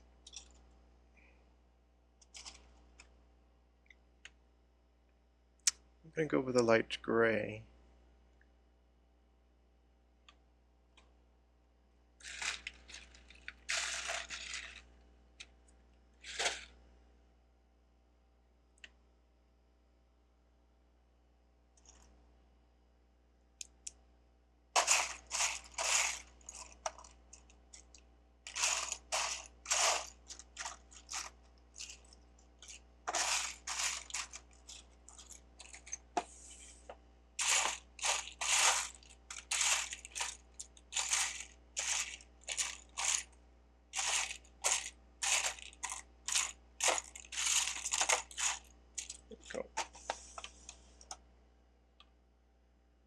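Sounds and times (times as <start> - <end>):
plastic bricks clattering: 12.2 - 14.9, 16.3 - 16.7, 24.8 - 27.1, 27.8 - 36.0, 37.4 - 43.3, 44.0 - 49.9.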